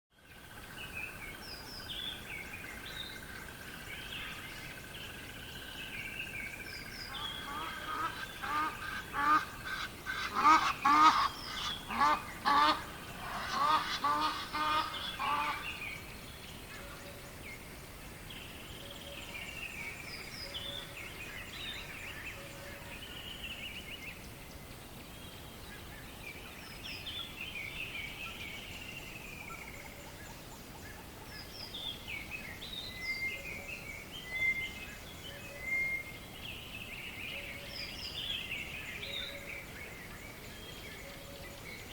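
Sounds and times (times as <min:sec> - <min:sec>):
background hiss: 0:00.2 - 0:41.9
loud repeated bird calls: 0:07.1 - 0:15.8.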